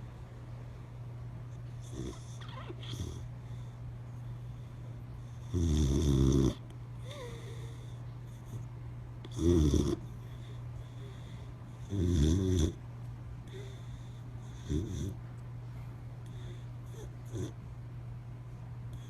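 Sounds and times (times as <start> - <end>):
dog snoring: 1.8 - 3.3, 5.2 - 8.6, 9.2 - 10.2, 11.8 - 12.8, 13.5 - 15.2, 16.3 - 17.6.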